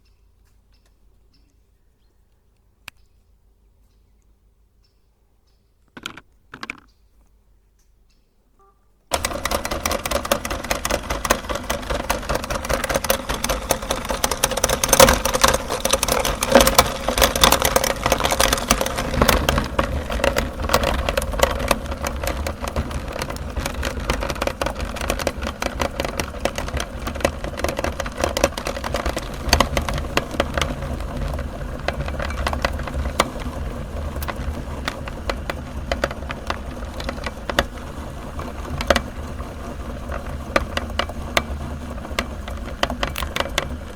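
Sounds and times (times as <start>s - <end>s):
meat grinder motor hum: 9.1s - 43.9s.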